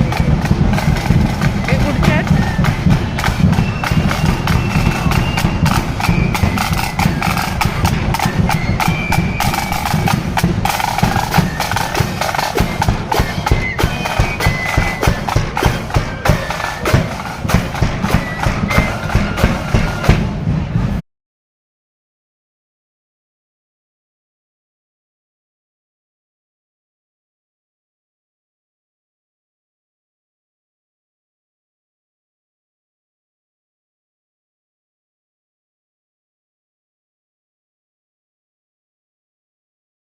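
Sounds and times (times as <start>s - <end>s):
heavy bass drum: 0.0s - 21.0s
rapid snare drumming: 0.0s - 21.0s
high piping melody: 3.8s - 20.0s.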